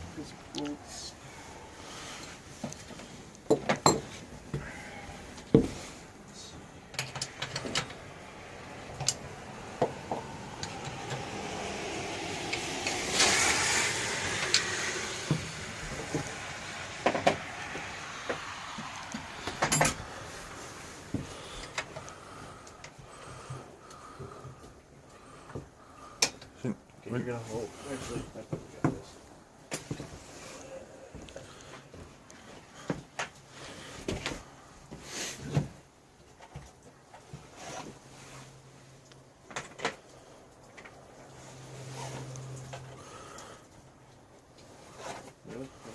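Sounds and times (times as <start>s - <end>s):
rushing noise: 7.2s - 21.8s.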